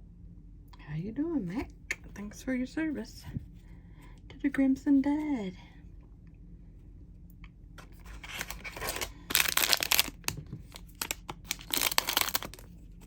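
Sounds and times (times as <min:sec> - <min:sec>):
plastic wrapper crinkling and tearing: 0:07.9 - 0:12.7.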